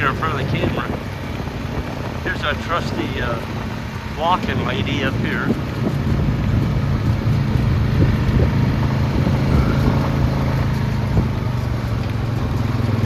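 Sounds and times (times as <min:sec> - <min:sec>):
atv engine running: 0:00.0 - 0:13.0.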